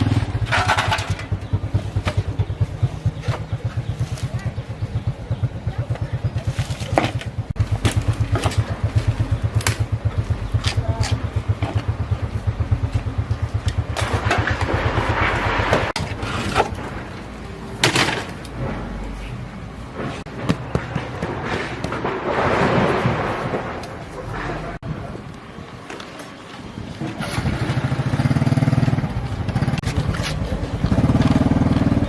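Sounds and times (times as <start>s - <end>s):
engine pulsing: 0.0s - 17.6s.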